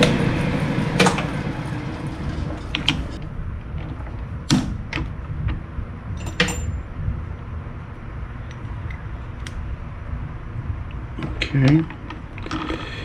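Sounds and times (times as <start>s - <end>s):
low steady hum: 0.0s - 13.0s
metal tools clicking and knocking: 6.2s - 6.8s.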